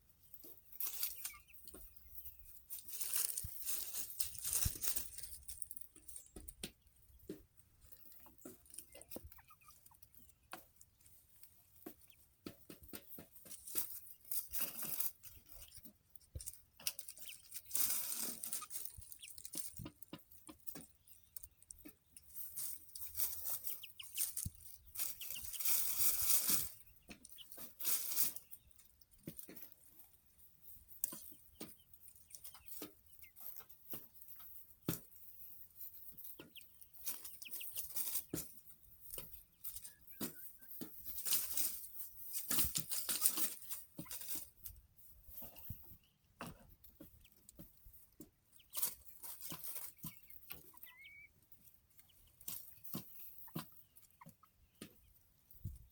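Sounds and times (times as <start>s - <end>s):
chickens scratching and pecking: 0.0s - 55.9s
chicken calls: 0.2s - 55.9s
rustling and wing flapping: 0.4s - 10.0s, 11.3s - 21.5s, 22.2s - 30.0s, 30.6s - 47.7s.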